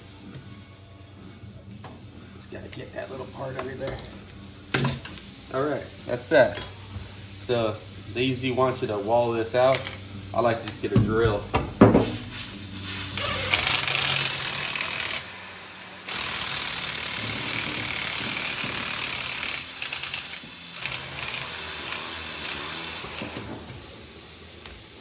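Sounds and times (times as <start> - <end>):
air hissing out of tyre: 11.6 - 19.6, 21.6 - 25.0
power drill running: 13.2 - 24.0.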